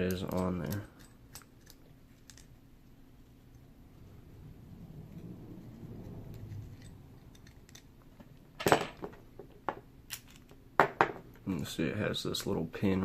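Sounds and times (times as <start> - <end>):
metallic clicks and clinks of lock parts: 0.0 - 2.6, 6.4 - 9.1, 10.1 - 10.6.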